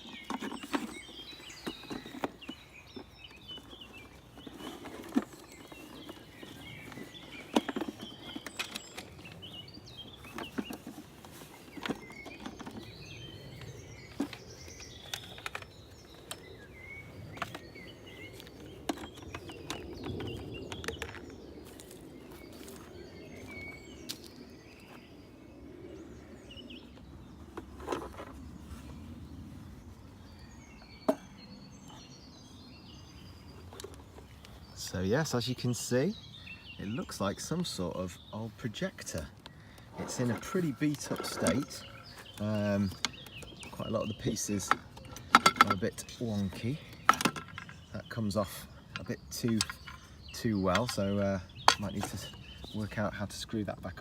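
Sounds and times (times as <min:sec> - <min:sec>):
knocks and clicks of handling: 0:00.0 - 0:16.5, 0:17.3 - 0:22.0, 0:39.0 - 0:47.9, 0:48.9 - 0:50.1, 0:50.7 - 0:52.8
birds chirping: 0:00.0 - 0:54.0.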